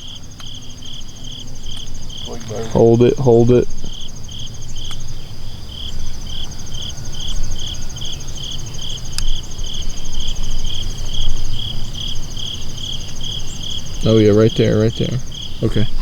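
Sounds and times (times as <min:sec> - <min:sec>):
faint clicks: 0:00.0 - 0:02.8, 0:04.8 - 0:05.1, 0:09.1 - 0:09.4
cricket chirping: 0:00.0 - 0:16.0
high cricket trill: 0:00.0 - 0:16.0
steady low rumble: 0:00.0 - 0:16.0.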